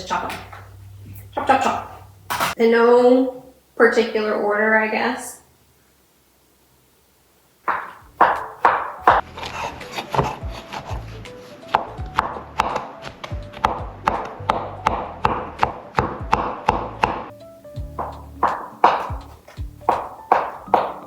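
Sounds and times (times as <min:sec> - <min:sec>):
background music with bass: 0:00.0 - 0:02.4, 0:09.0 - 0:21.0
knife chopping on cutting board: 0:07.7 - 0:17.3, 0:17.9 - 0:21.0.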